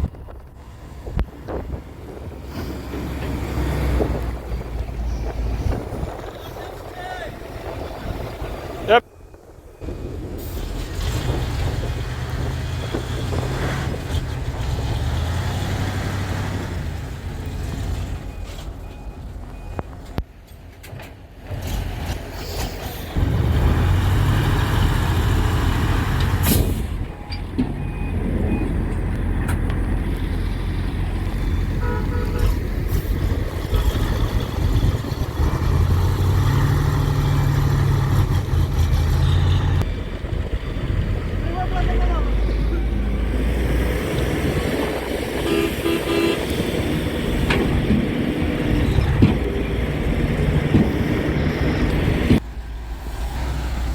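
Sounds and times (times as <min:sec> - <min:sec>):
heavy diesel engine revving: 0:09.8 - 0:18.4, 0:23.1 - 0:27.2, 0:27.8 - 0:53.9.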